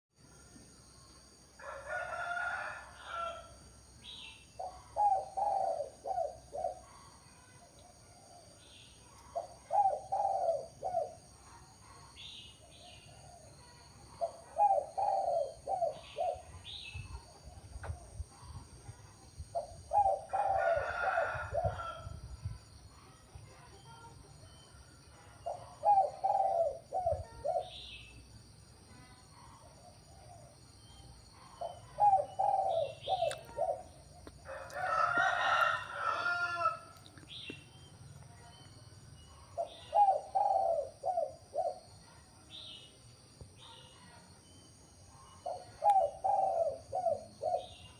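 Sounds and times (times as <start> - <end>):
rooster crowing: 1.6 - 3.6, 20.1 - 22.2, 34.5 - 37.0
dove cooing: 4.6 - 7.1, 9.3 - 11.3, 14.2 - 18.6, 19.5 - 22.2, 25.4 - 27.9, 31.6 - 34.0, 39.6 - 41.9, 45.4 - 47.9
small birds chirping: 30.4 - 34.4, 37.0 - 42.0.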